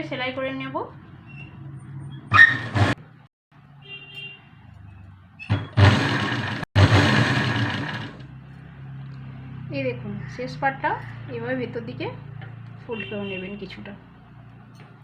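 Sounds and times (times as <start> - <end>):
sewing machine stitching fabric: 2.4 - 3.0, 5.5 - 8.3.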